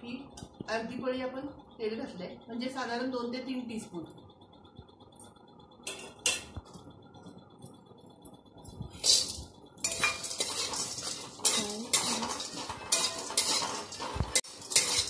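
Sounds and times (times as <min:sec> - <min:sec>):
spatula scraping and stirring: 0:08.9 - 0:15.0.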